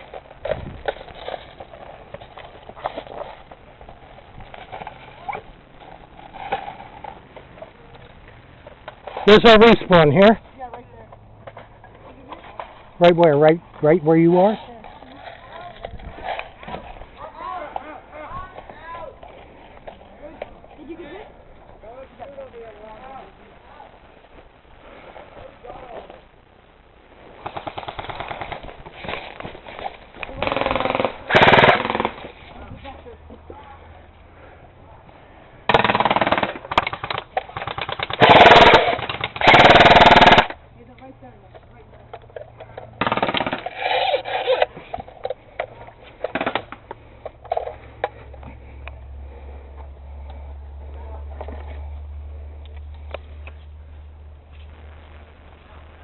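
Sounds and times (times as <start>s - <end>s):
airsoft gun bursts: 30.4s - 32.3s, 35.7s - 40.6s.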